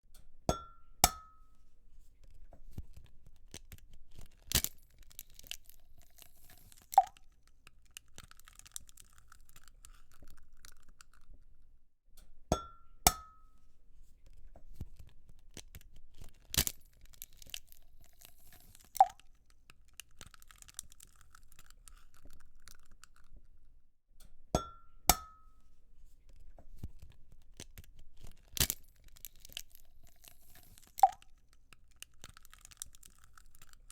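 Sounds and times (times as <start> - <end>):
egg tapping against a bowl: 0.5 - 1.4, 12.5 - 13.5, 24.6 - 25.5
eggshell crackling: 3.3 - 11.5, 15.4 - 23.6, 27.4 - 33.9.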